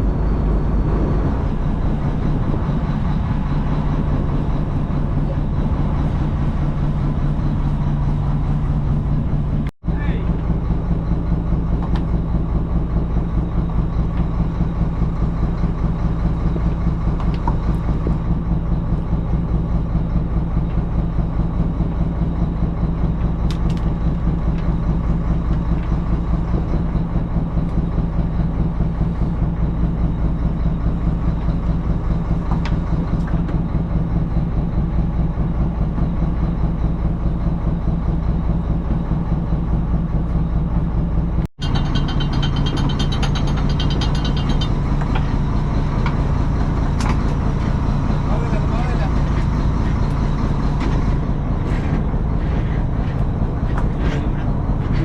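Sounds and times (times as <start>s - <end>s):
boat engine running: 0.0s - 55.0s.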